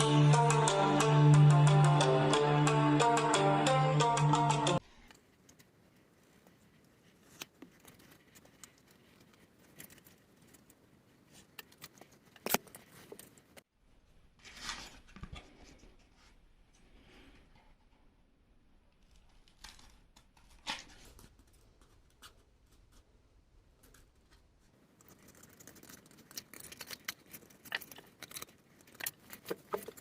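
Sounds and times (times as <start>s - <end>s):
intro music: 0.0s - 4.8s.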